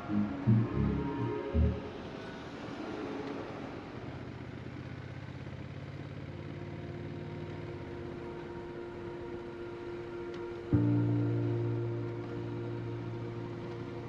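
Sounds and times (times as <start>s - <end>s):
motorcycle engine idling: 4.2s - 10.1s.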